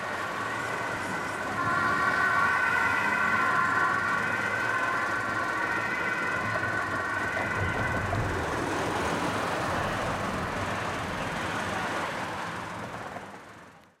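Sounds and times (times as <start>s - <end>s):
high siren tone: 0.0s - 11.0s
fire engines rumbling: 0.0s - 13.9s.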